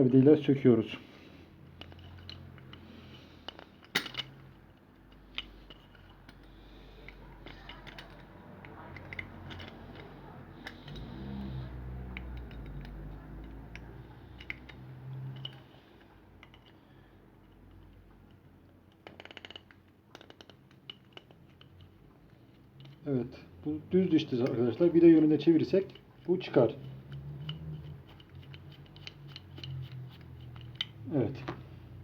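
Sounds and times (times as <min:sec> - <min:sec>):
metallic tool clicks and scrapes: 0:01.7 - 0:16.8, 0:25.2 - 0:31.0.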